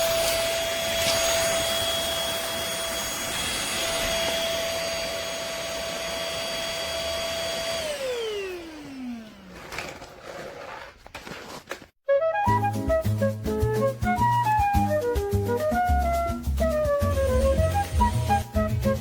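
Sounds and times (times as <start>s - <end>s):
stick vacuum whine: 0.0s - 11.9s.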